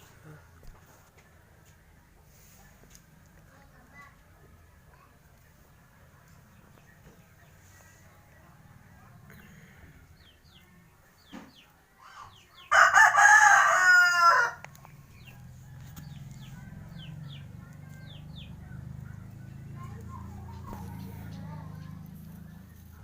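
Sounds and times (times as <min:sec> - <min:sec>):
rooster crowing: 0:12.7 - 0:14.7.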